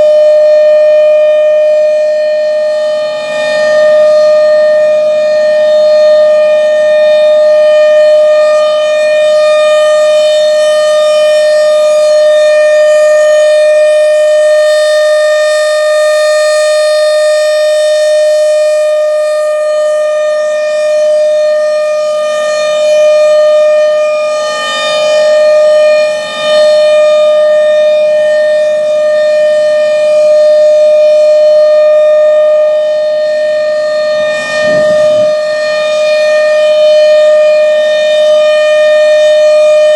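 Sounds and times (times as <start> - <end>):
outdoor warning siren steady tone: 0.0 - 39.9.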